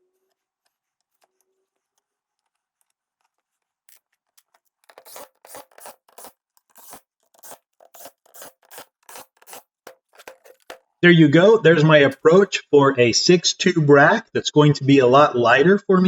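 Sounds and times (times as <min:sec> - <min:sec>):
short scratchy rasping noises: 0:03.9 - 0:10.9.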